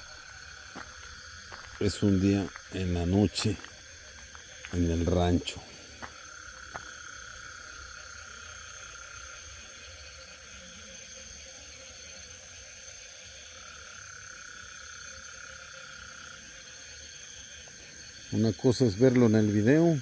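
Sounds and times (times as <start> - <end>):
insects trilling: 0.0 - 20.0.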